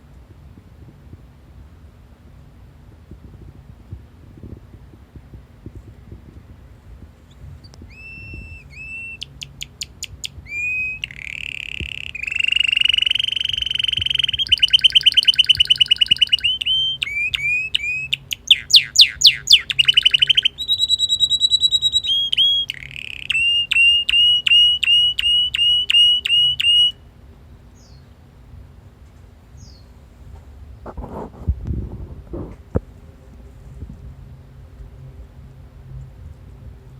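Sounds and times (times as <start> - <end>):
canary singing: 7.2 - 27.0.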